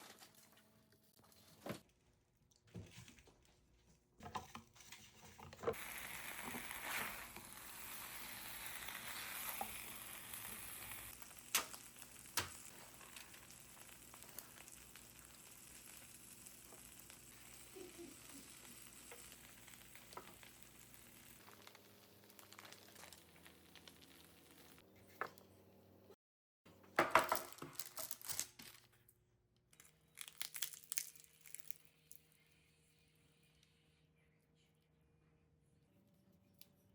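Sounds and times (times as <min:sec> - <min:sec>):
food sizzling in a frying pan: 0:05.7 - 0:24.8.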